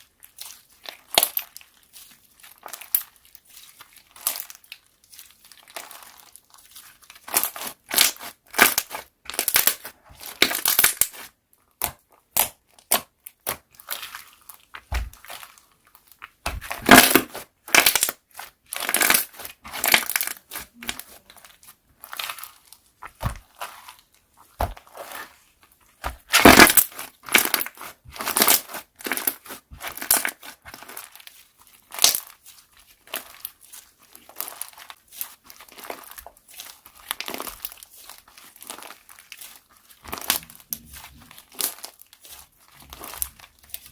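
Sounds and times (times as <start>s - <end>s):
slime squishing and popping: 7.2s - 25.4s, 26.0s - 31.3s, 34.1s - 43.9s.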